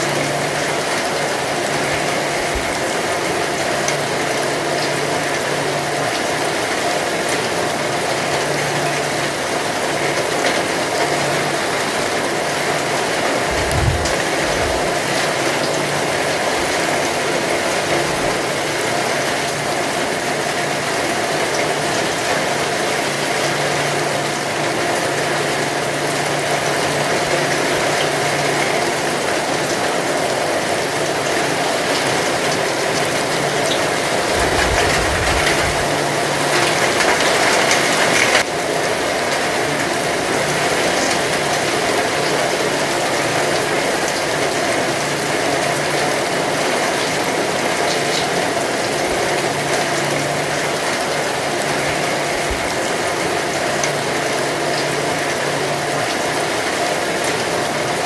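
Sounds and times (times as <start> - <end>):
heavy rain falling: 0.0 - 58.0
low thumps: 13.5 - 14.9.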